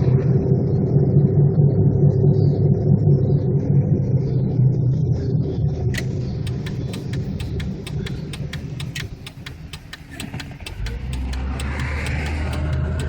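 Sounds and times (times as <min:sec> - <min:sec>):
car low rumble: 0:00.0 - 0:13.0
steady low hum: 0:05.7 - 0:13.0
rapid even ticking: 0:06.0 - 0:13.0.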